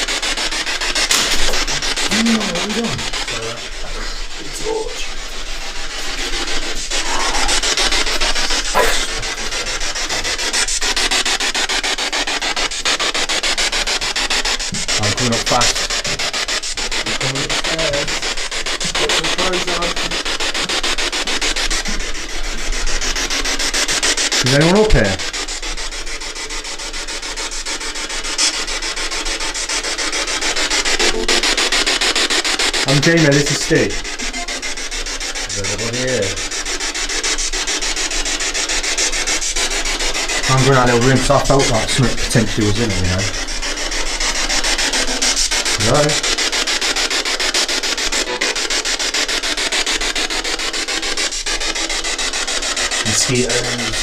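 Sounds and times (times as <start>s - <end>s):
pulsing radio static: 0.8s - 13.4s, 28.0s - 36.7s, 37.7s - 50.7s, 51.6s - 54.0s.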